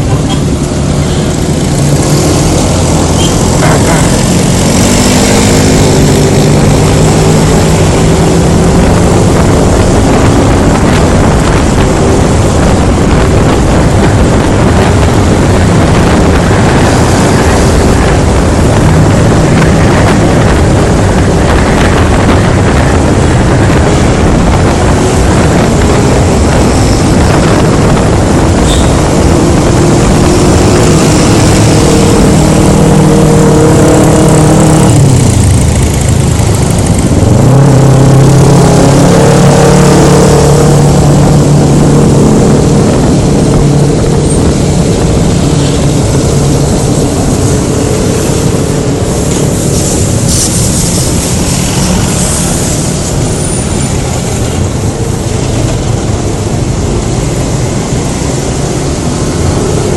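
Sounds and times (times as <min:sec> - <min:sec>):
scooter engine hum: 0:00.0 - 0:37.2
wind rush over microphone: 0:00.0 - 0:59.9.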